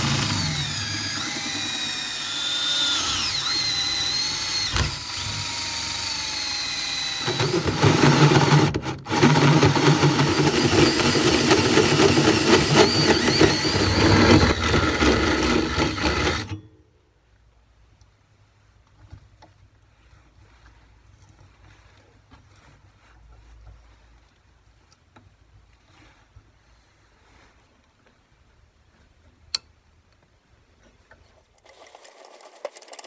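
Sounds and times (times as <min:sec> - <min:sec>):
drill bit grinding into work: 0:00.0 - 0:16.6
electric drill motor whining: 0:00.0 - 0:16.6.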